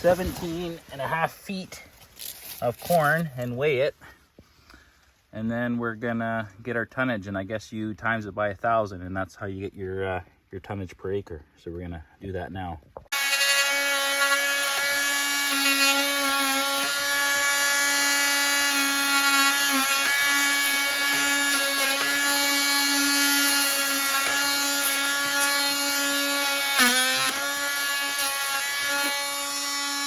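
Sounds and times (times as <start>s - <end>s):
power tool motor whining: 13.1s - 30.0s.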